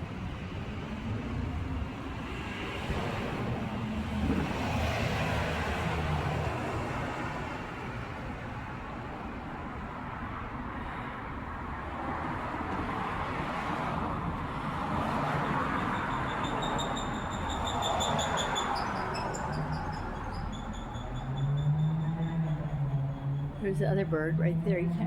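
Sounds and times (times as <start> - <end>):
street traffic passing: 0.0 - 25.0.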